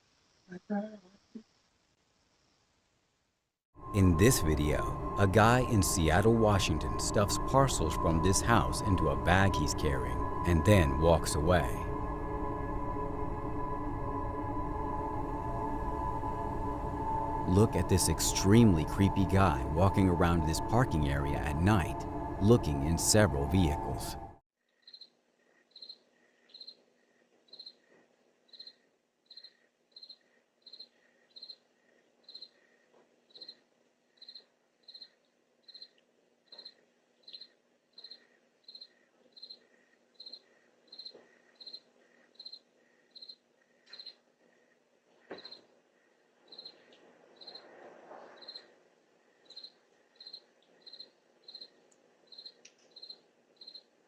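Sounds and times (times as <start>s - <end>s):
faint low hum: 3.8s - 24.4s
cricket chirping: 4.2s - 47.8s, 48.4s - 53.9s.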